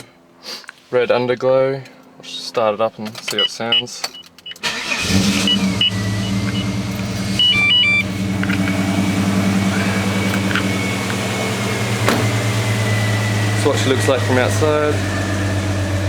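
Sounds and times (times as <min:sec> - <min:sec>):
car engine cranking: 0:04.1 - 0:16.0
car engine idling: 0:04.6 - 0:16.0
short electronic beeps: 0:07.4 - 0:08.1.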